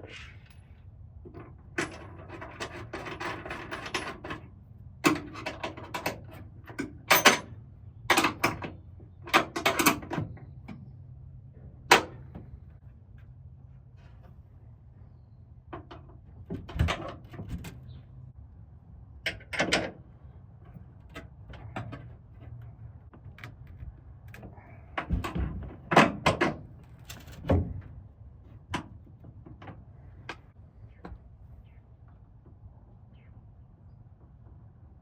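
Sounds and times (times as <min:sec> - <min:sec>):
metal clanks and knocks: 0:01.3 - 0:10.8, 0:24.4 - 0:27.9.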